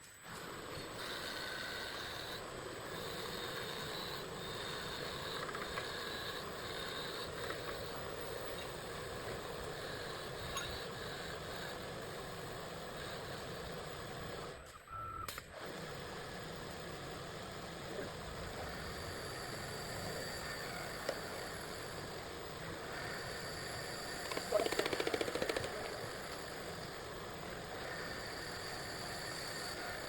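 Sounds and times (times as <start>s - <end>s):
wood lathe running: 0.9s - 13.6s.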